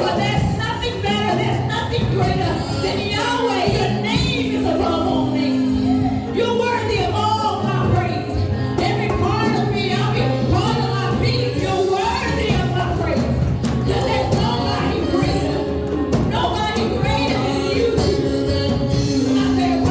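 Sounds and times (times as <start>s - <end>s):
held bass notes: 0.0s - 19.9s
steady drum beat: 7.8s - 19.9s
people singing over a band: 8.8s - 19.9s.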